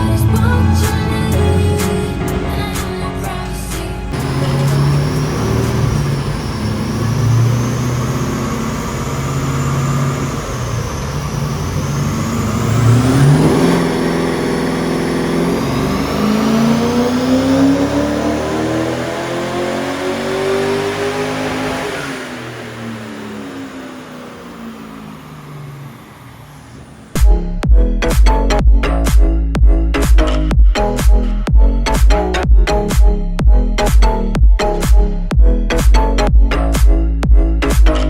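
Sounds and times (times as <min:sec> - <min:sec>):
car engine revving: 0:00.0 - 0:27.4, 0:37.5 - 0:38.0.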